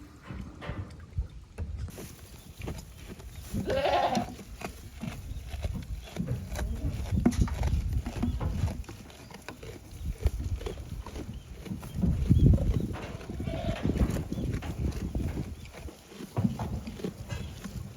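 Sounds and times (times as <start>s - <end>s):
wind rumbling on microphone: 0.0s - 17.9s
goat bleating: 3.5s - 4.5s, 13.1s - 14.0s.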